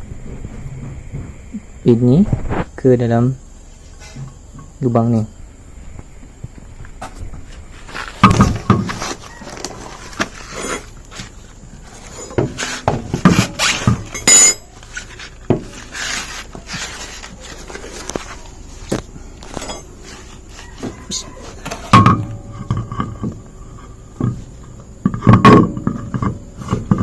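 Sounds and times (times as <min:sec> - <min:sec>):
loud thuds: 0:00.0 - 0:02.7, 0:05.8 - 0:10.4
wheel knocks and scrapes: 0:00.0 - 0:02.9, 0:03.5 - 0:27.0.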